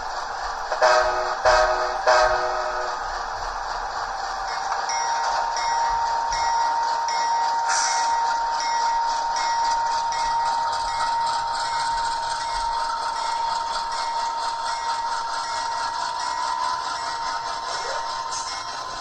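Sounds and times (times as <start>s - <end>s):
bell-like ring: 4.4s - 19.0s
high steady tone: 4.4s - 19.0s.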